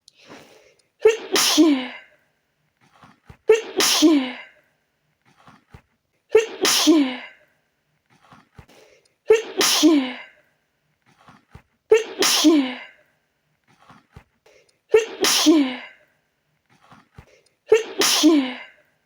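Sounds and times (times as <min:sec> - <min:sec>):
woman sneezing: 0:00.3 - 0:02.1, 0:03.0 - 0:04.6, 0:05.4 - 0:07.4, 0:09.3 - 0:10.4, 0:11.2 - 0:13.0, 0:14.9 - 0:16.0, 0:16.8 - 0:18.8.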